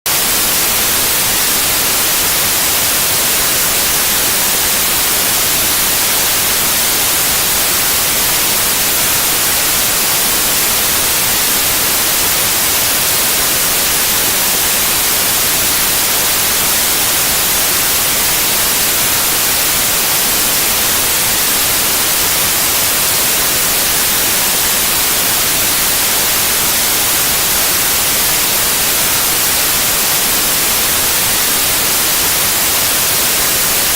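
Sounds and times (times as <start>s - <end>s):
white noise hiss: 0.1s - 33.9s.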